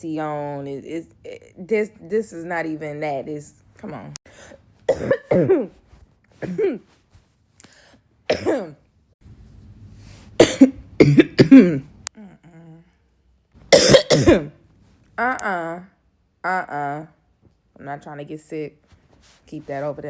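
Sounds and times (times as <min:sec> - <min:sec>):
woman clearing her throat: 0:04.9 - 0:05.7, 0:06.4 - 0:06.9, 0:08.3 - 0:08.8, 0:10.4 - 0:12.6, 0:13.7 - 0:14.6
woman coughing: 0:04.9 - 0:05.8, 0:06.4 - 0:07.0, 0:08.3 - 0:08.8, 0:10.4 - 0:12.0, 0:13.7 - 0:14.6.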